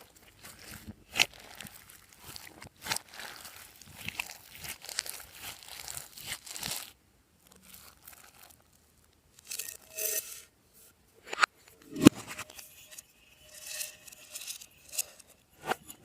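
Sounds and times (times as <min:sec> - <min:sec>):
slime squished by hand: 0:00.2 - 0:08.8.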